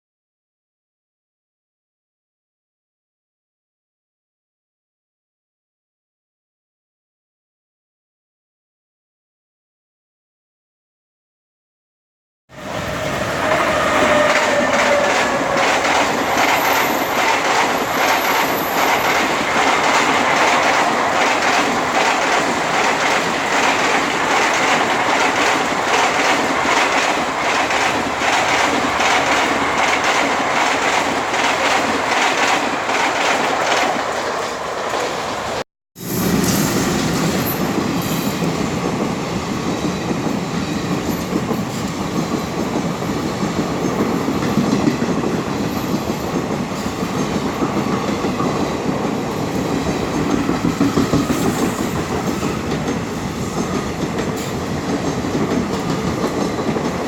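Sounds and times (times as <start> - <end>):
train wheels clattering on rails: 13.0 - 57.0.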